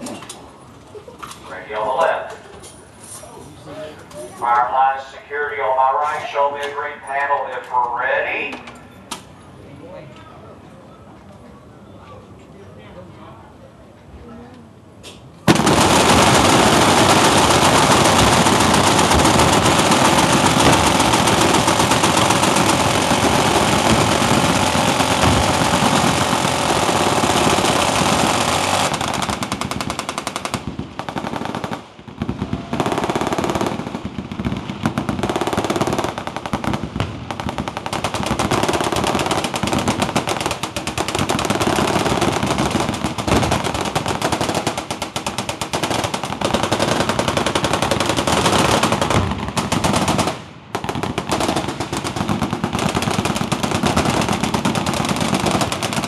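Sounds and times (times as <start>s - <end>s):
machine gun fire: 15.5s - 56.0s.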